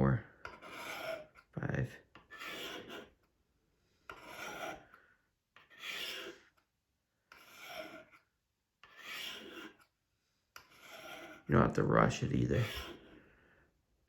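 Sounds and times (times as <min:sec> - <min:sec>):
blade scraping on sharpening rod: 0:00.4 - 0:01.5, 0:02.2 - 0:03.2, 0:04.1 - 0:05.0, 0:05.6 - 0:06.5, 0:07.3 - 0:08.2, 0:08.8 - 0:09.9, 0:10.6 - 0:11.8, 0:12.4 - 0:13.2.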